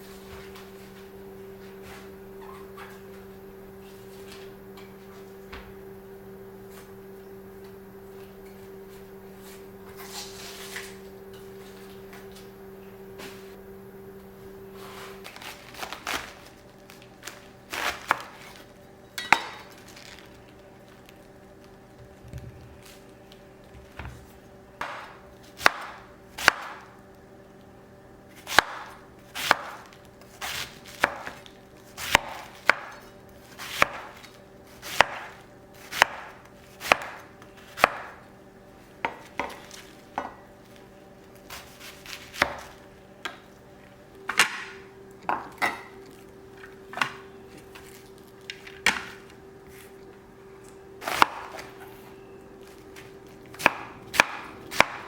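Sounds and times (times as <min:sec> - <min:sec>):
steady low hum: 0:00.0 - 0:55.0
knife chopping on cutting board: 0:24.8 - 0:26.8, 0:28.4 - 0:29.8, 0:30.4 - 0:31.4, 0:32.0 - 0:33.0, 0:33.6 - 0:34.2, 0:34.8 - 0:38.2, 0:41.5 - 0:42.8, 0:51.0 - 0:51.7, 0:53.5 - 0:55.0.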